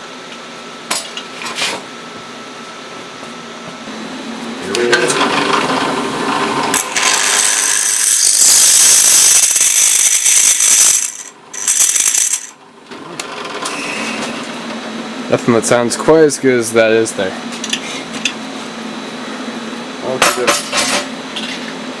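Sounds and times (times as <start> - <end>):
drill press cutting metal: 4.7 - 12.6.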